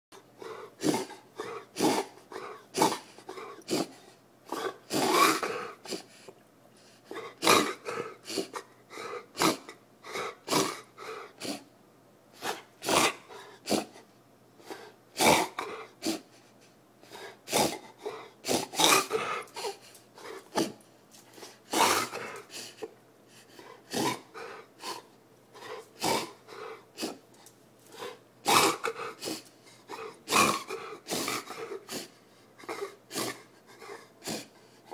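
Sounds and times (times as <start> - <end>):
dog coughing: 0.4 - 6.0, 7.1 - 11.7, 12.4 - 14.0, 14.8 - 16.3, 17.5 - 20.8, 21.7 - 22.7, 23.9 - 27.2, 28.0 - 34.5.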